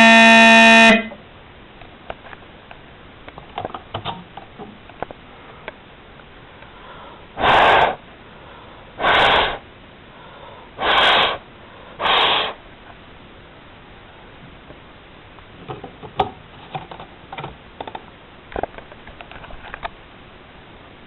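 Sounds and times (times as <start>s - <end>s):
fire alarm horn blasts: 0.0s - 1.2s.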